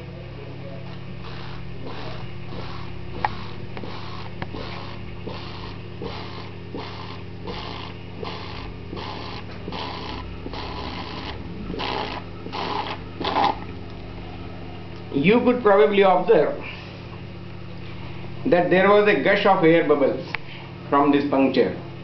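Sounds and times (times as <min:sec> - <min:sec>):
slurping through a straw: 0:01.2 - 0:13.6.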